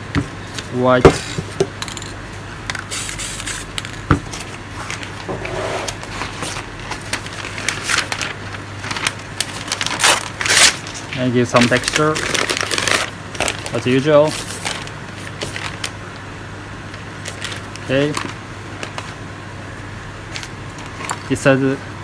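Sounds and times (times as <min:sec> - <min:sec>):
paper crackling and scraping: 0:04.3 - 0:16.0, 0:17.2 - 0:19.2.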